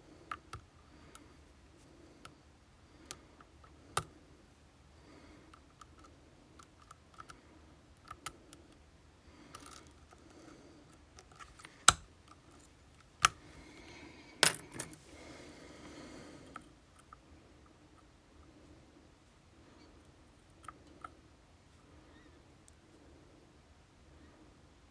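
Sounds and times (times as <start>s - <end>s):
metallic clicks and clinks: 14.4s - 15.0s.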